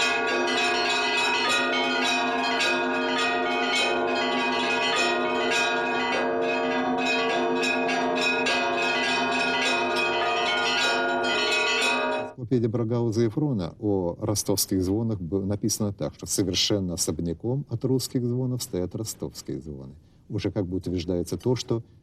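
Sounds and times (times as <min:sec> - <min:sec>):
large bells ringing: 0:00.0 - 0:12.4
small church bells striking rapidly: 0:00.0 - 0:12.4.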